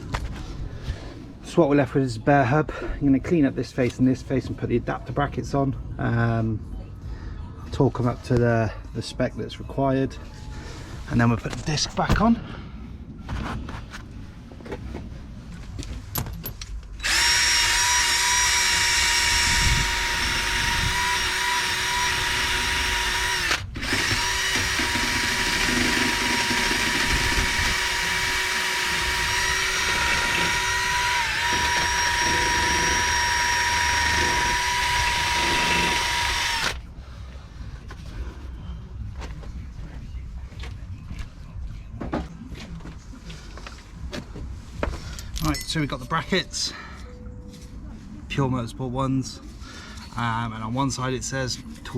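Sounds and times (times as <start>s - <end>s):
power drill whining: 17.0s - 36.8s.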